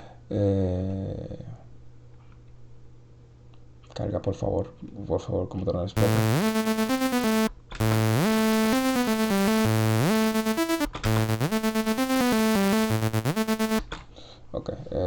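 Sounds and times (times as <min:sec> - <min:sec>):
buzzy synthesizer melody: 0:06.0 - 0:13.8.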